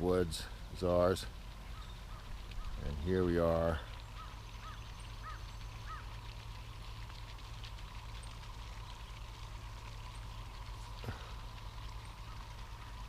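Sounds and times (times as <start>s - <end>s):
bird calling: 1.6s - 6.4s, 10.0s - 13.0s.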